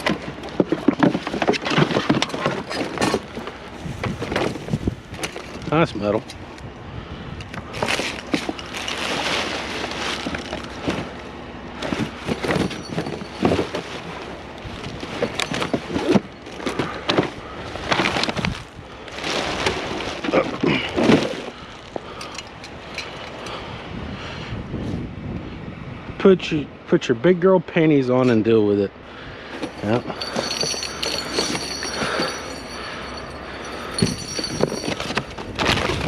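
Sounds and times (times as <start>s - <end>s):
scrap metal clanking and scraping: 0.0s - 5.8s, 29.5s - 36.0s
wind on microphone: 1.9s - 7.9s, 23.6s - 26.2s, 30.1s - 36.0s.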